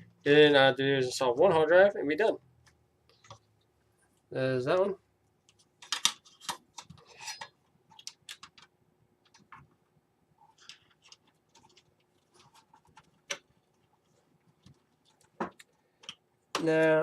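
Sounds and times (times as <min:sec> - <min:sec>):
computer parts clicking and tapping: 0:05.4 - 0:09.8.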